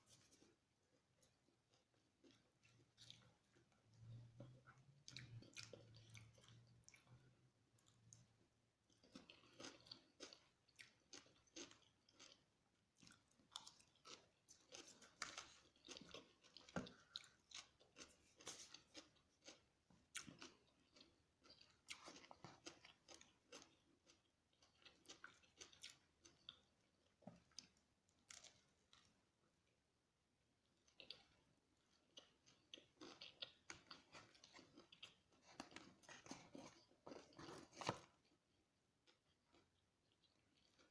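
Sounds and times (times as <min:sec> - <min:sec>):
crunchy chewing: 0:08.9 - 0:12.4, 0:13.0 - 0:29.1, 0:30.9 - 0:38.3.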